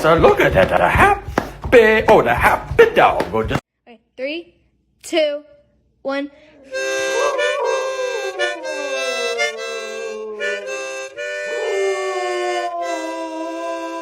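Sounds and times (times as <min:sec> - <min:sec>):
dog howling: 0:06.7 - 0:14.0
harmonica chords: 0:06.7 - 0:14.0.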